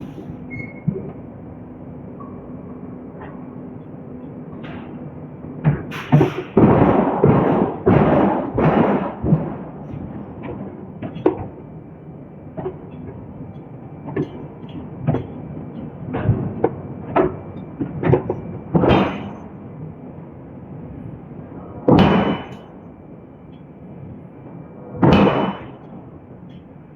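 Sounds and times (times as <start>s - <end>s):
forging hammer striking steel: 18.2s - 19.4s, 21.9s - 22.8s, 25.0s - 25.9s.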